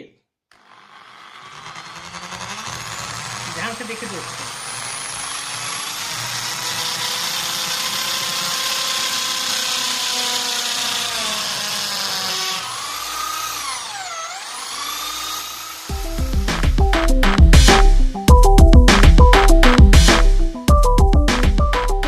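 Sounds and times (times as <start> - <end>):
electric drill whining: 0.5 - 17.4.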